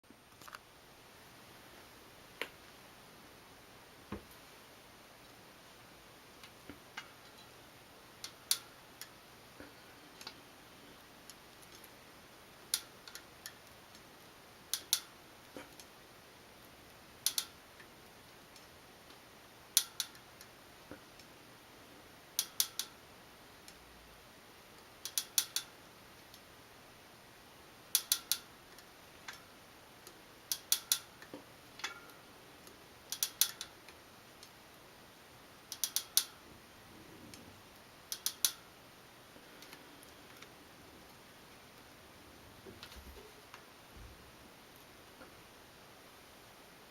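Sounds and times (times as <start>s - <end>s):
metallic pinging from bicycle wheel: 17.2s - 17.6s, 22.4s - 23.0s, 27.9s - 28.5s, 33.1s - 33.7s, 35.7s - 36.4s.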